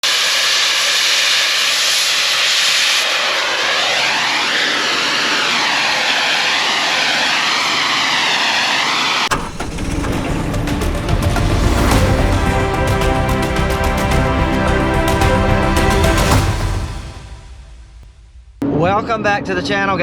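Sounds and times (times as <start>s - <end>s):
jet-like rushing roar: 0.0s - 18.0s
music with low beat: 9.9s - 18.0s.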